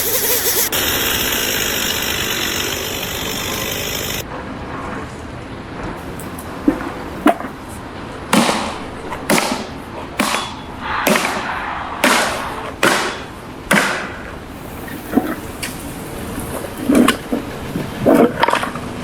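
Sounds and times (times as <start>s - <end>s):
sharp knocks: 8.3s - 14.4s
heavy ringing strikes: 8.7s - 14.5s.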